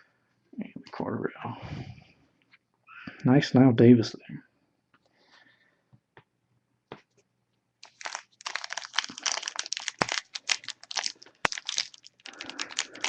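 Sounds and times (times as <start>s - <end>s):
foil wrapper crinkling: 7.8s - 13.0s.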